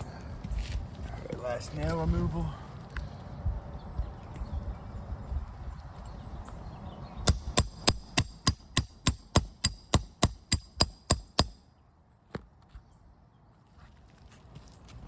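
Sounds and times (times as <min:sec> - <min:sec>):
hammer striking metal tool: 0:07.3 - 0:11.6.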